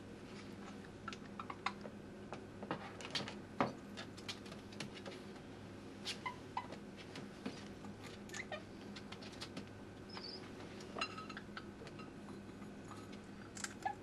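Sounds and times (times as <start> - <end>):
parrot chirps: 11.0 - 12.2.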